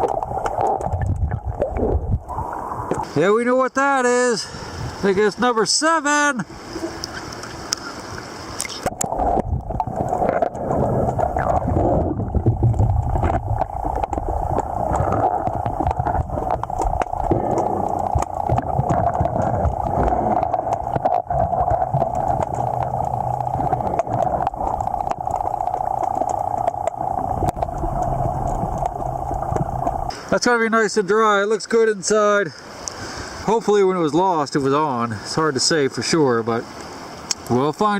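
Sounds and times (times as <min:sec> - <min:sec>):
river water rushing: 0:13.0 - 0:30.4.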